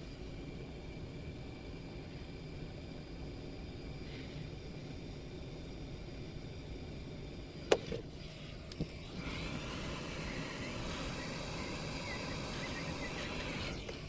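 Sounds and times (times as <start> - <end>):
low background rumble: 0.0 - 14.0.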